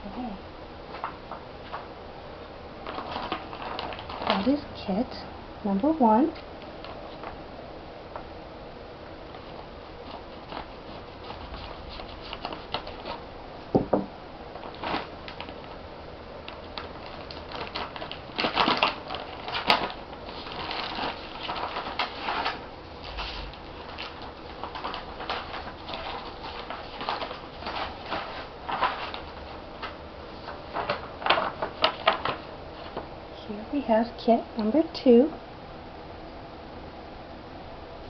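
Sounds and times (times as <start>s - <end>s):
packaging crinkling and rustling: 2.8s - 4.8s, 6.3s - 7.4s, 9.2s - 13.2s, 14.5s - 15.8s, 16.4s - 33.1s.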